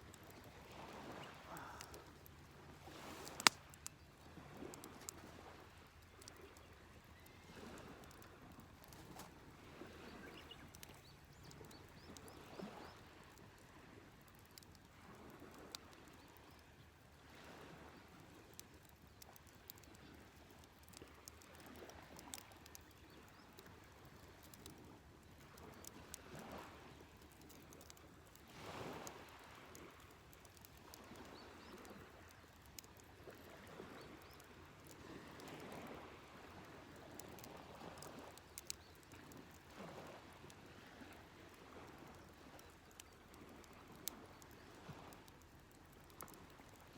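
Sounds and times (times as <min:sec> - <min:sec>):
sharp small clicks: 0:03.2 - 0:04.0.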